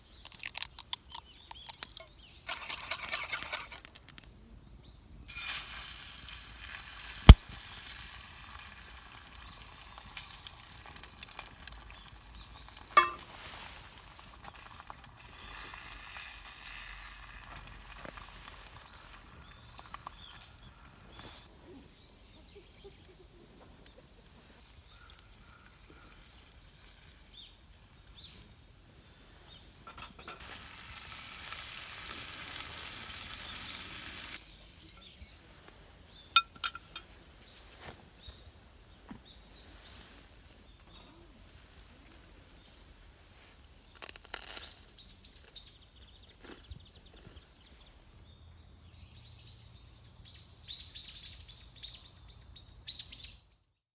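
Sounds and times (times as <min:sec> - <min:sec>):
food sizzling in a pan: 0:05.3 - 0:20.6, 0:30.4 - 0:35.0.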